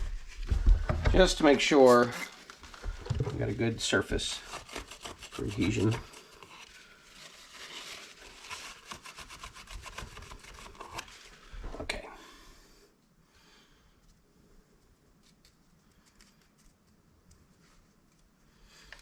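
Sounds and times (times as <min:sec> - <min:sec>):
paper towel rubbing plastic: 0:00.0 - 0:11.3.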